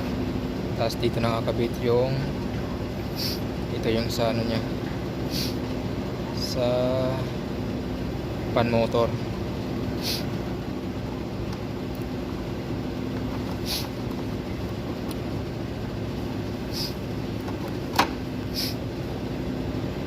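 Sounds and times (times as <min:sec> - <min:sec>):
mechanical hum: 0:00.0 - 0:20.0.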